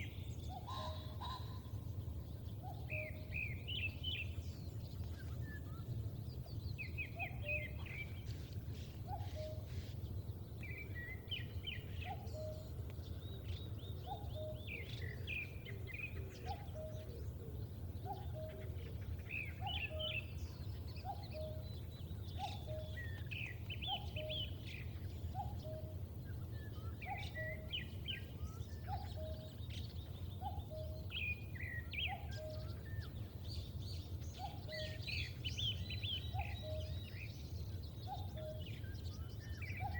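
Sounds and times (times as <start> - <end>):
birds chirping and trilling: 0.0 - 39.9.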